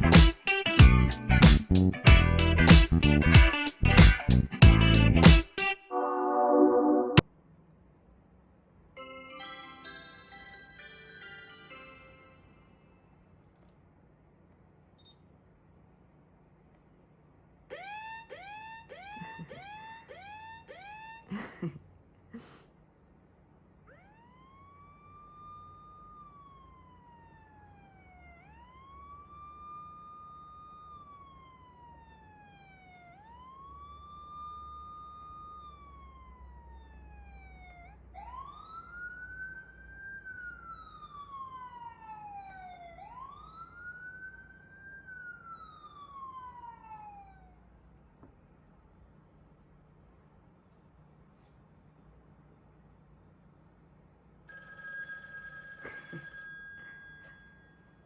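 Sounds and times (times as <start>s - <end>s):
siren wailing: 5.8s - 7.2s, 17.7s - 21.4s, 23.8s - 47.6s.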